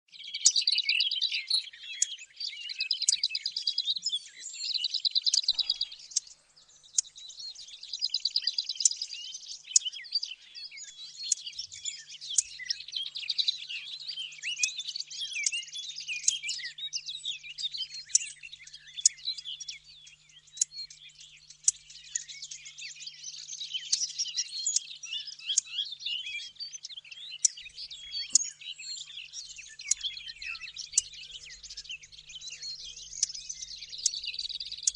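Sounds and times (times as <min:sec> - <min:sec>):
recorded birdsong warbling and trills: 0:00.1 - 0:34.9.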